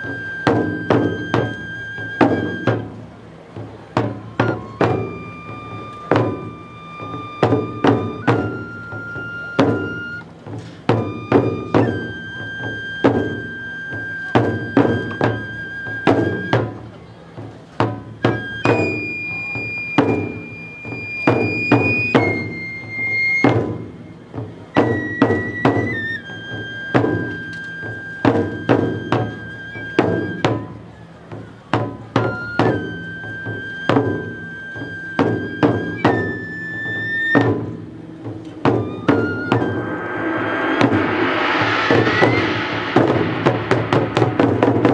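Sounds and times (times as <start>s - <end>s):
high flute long notes: 0.0s - 3.0s, 4.2s - 10.3s, 10.9s - 16.8s, 18.3s - 23.6s, 24.8s - 31.1s, 32.2s - 44.9s
drum strikes in quick clusters: 0.0s - 22.7s, 37.3s - 44.9s.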